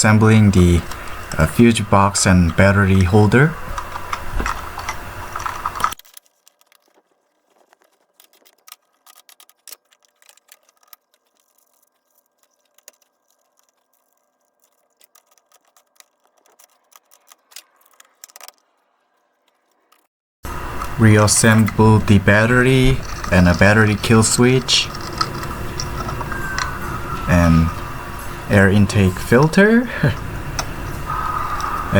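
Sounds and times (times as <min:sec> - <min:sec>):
small clicks and light rattles: 0:03.8 - 0:20.1.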